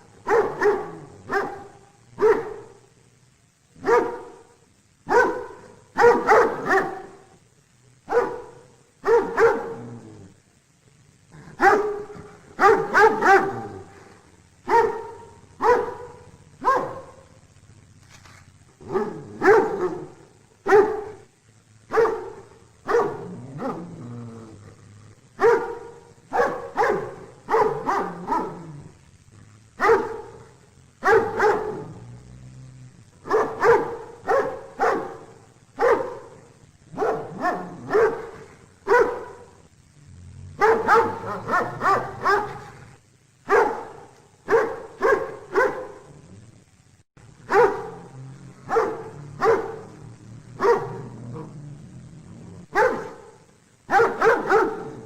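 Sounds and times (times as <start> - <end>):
dog barking: 0.1 - 2.9, 3.8 - 7.4, 8.0 - 10.0, 11.4 - 14.0, 14.6 - 17.4, 18.8 - 23.9, 25.4 - 29.0, 29.8 - 32.0, 33.2 - 39.6, 40.6 - 42.8, 43.4 - 46.1, 47.4 - 51.6, 52.7 - 55.0.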